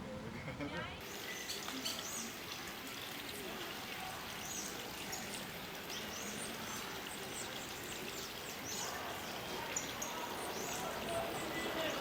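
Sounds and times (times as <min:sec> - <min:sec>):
small birds chirping: 0:04.4 - 0:12.0
steady background noise: 0:05.4 - 0:12.0.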